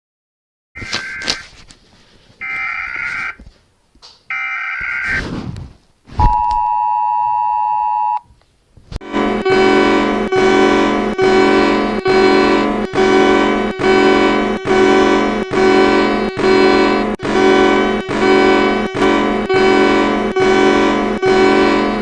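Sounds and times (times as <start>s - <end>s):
squawking data bursts: 0.8s - 1.4s, 2.4s - 3.4s, 4.3s - 5.2s
two-tone attention signal: 6.2s - 8.2s, 9.2s - 22.0s
loud pulsing chord: 9.0s - 22.0s.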